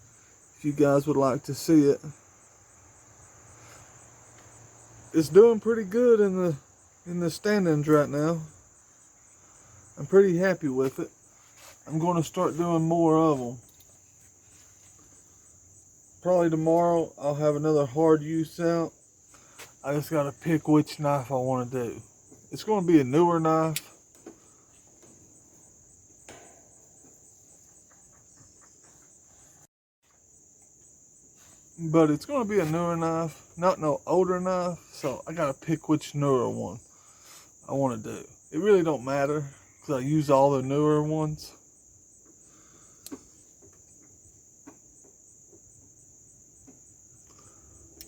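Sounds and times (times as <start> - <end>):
insects chirping in a trill: 0.0 - 48.0
faint sharp clicks: 43.0 - 43.2.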